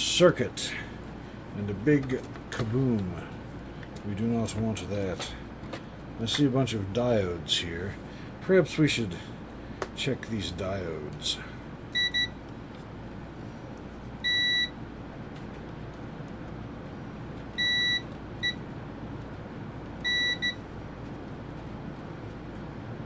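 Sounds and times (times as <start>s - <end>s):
low background hum: 0.0s - 23.0s
multimeter short high beeps: 12.0s - 12.3s, 14.2s - 14.7s, 17.6s - 18.6s, 20.1s - 20.6s.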